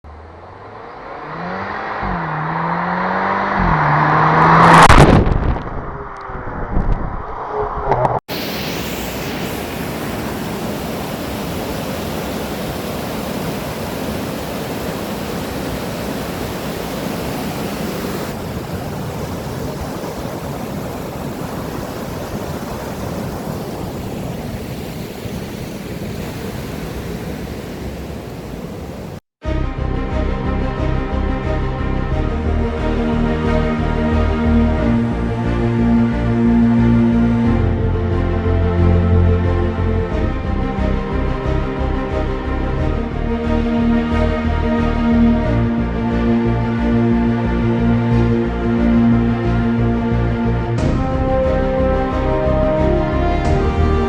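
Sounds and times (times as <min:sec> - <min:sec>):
vehicle engine passing by: 0:00.1 - 0:08.2
waterfall rushing: 0:08.3 - 0:29.2.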